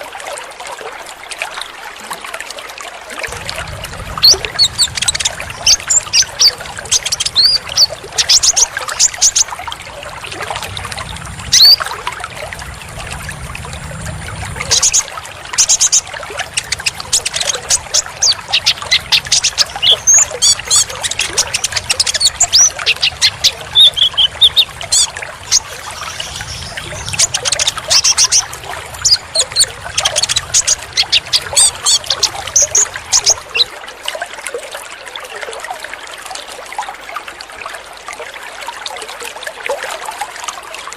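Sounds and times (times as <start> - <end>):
trickling water: 0.0 - 40.9
low hum: 3.3 - 33.6
sunbird chirping: 3.3 - 33.7.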